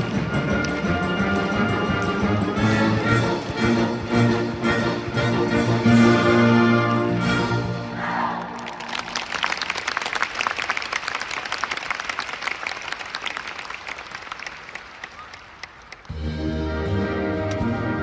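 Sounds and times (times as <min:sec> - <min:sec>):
wind band chord: 0:00.0 - 0:08.1
audience applauding: 0:08.1 - 0:16.2.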